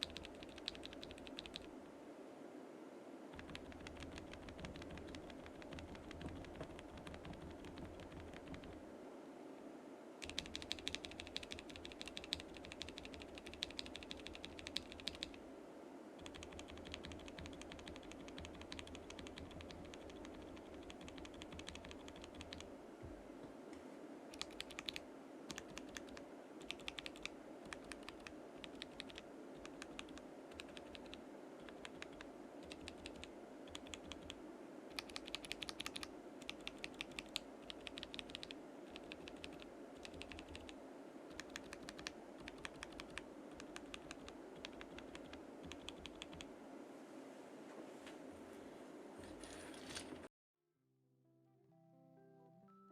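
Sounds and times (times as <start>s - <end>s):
mechanical keyboard typing: 0.0s - 1.7s, 3.3s - 8.8s, 10.2s - 15.4s, 16.2s - 22.7s, 24.3s - 46.5s.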